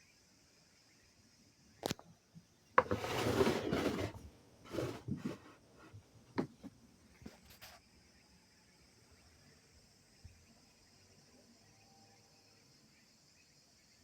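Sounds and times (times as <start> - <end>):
scraping and rubbing: 2.8 - 6.7.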